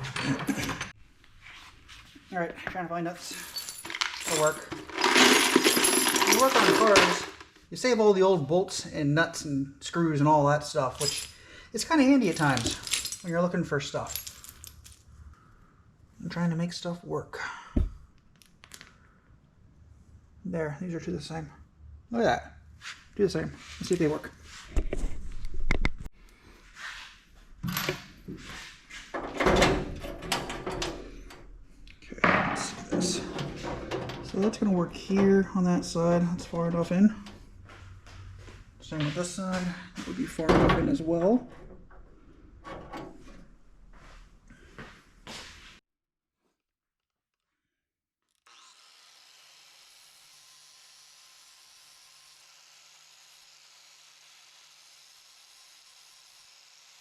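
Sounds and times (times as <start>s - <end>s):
steel nuts clicking and scraping: 32.5s - 35.4s.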